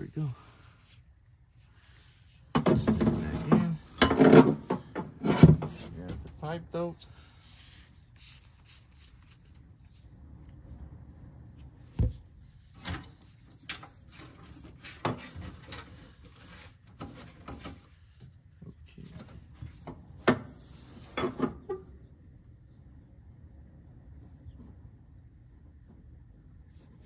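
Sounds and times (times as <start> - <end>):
tools and pipe fittings clinking: 12.7 - 17.8.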